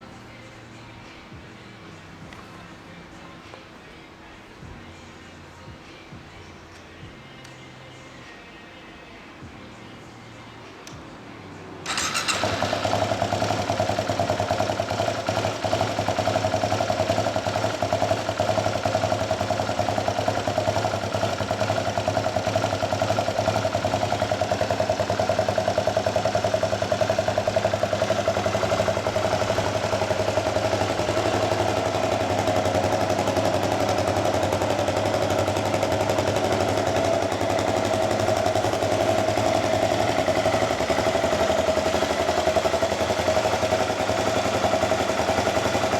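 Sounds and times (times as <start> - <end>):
motorcycle engine idling: 11.8 - 45.9.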